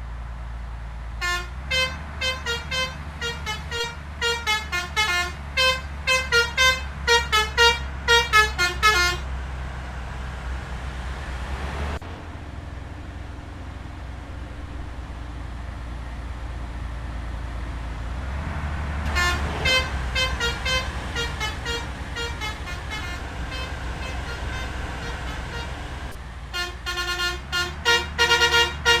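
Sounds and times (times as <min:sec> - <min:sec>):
bus engine rumbling: 0:00.0 - 0:29.0
multi-tone bus horn melody: 0:01.2 - 0:09.4, 0:18.4 - 0:29.0.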